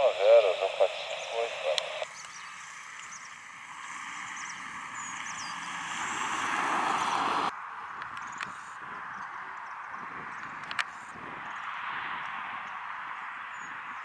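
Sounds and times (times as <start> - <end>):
faint bird chirps: 0.0 - 5.7
airliner engine noise: 0.0 - 7.5.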